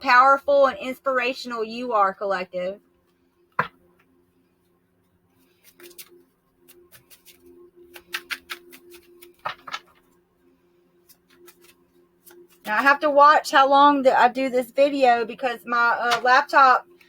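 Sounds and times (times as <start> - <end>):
cards clicking and flicking: 5.6 - 6.1, 6.7 - 10.0, 11.1 - 12.4
card snap: 8.0 - 9.8.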